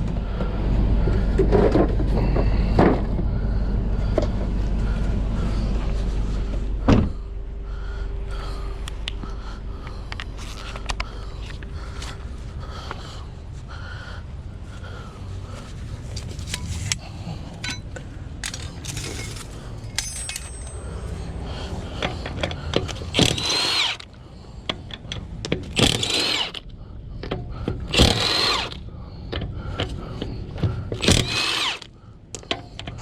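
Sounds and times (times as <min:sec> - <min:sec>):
low steady rumble: 0:00.0 - 0:33.0
metal tools and nuts clinking: 0:17.6 - 0:21.2
impact gun bursts: 0:23.2 - 0:24.1, 0:25.8 - 0:26.6, 0:27.9 - 0:28.8, 0:31.0 - 0:31.9.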